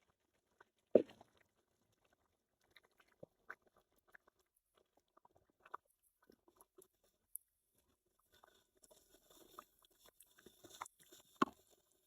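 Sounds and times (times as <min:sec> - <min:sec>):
faint small clicks and taps: 0:05.1 - 0:12.0.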